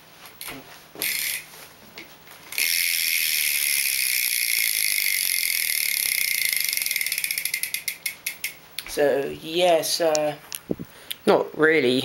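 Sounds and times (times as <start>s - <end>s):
bike hub freewheel clicking: 0.4s - 1.5s, 2.5s - 8.6s.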